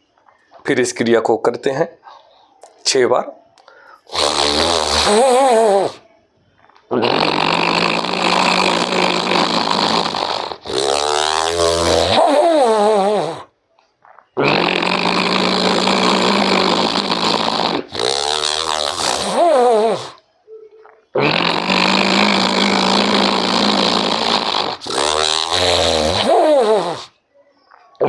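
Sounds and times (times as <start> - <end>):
rasping throat breathing: 3.6 - 6.0, 6.9 - 20.2, 20.9 - 27.2.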